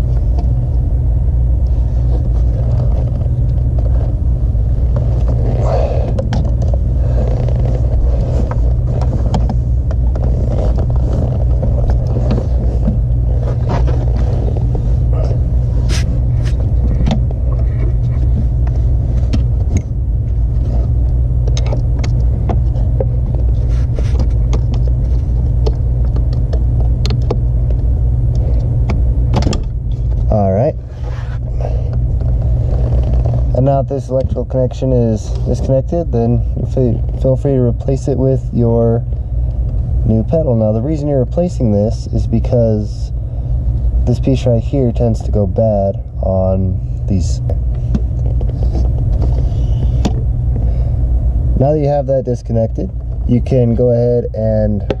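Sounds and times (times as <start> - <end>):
low rumble: 0.0 - 55.0.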